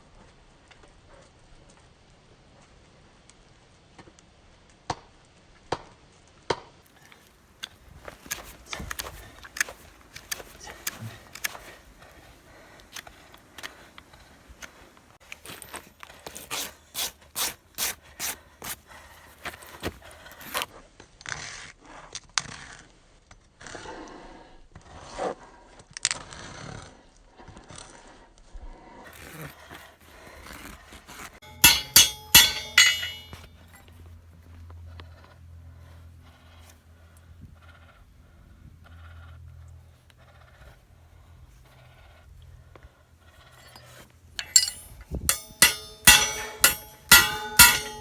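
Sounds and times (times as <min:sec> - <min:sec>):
rasp filing a hoof: 0:15.7 - 0:20.6, 0:31.4 - 0:33.4, 0:43.6 - 0:48.0
sharp ringing strikes: 0:31.4 - 0:33.5, 0:44.4 - 0:48.0.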